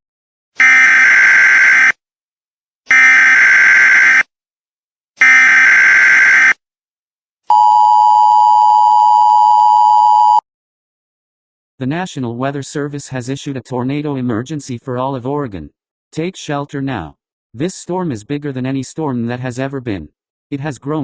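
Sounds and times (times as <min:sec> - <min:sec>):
buzzing data bursts: 0:00.6 - 0:01.9, 0:02.9 - 0:04.2
two-tone attention signal: 0:07.5 - 0:10.4.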